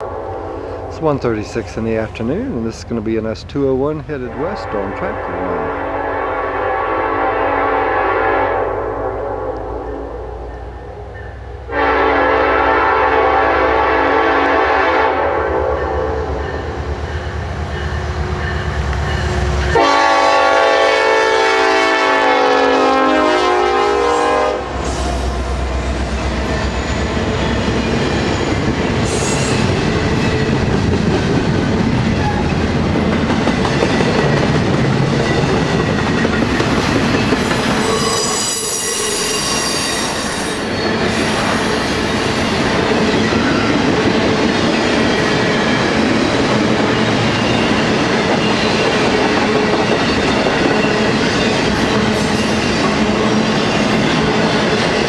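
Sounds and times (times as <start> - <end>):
train horn blast: 0.0 - 1.4, 4.2 - 10.9, 11.6 - 16.7, 18.4 - 26.0, 36.8 - 40.0
diesel locomotives rumbling: 0.0 - 55.0
high wheel squeal: 33.7 - 43.9.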